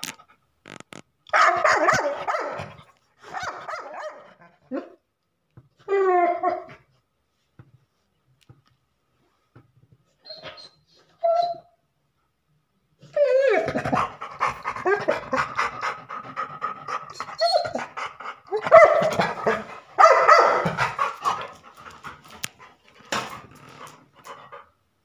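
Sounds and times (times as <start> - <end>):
dog whining: 10.2 - 11.8, 13.0 - 21.5
dog panting fast: 14.0 - 18.5, 20.6 - 22.8.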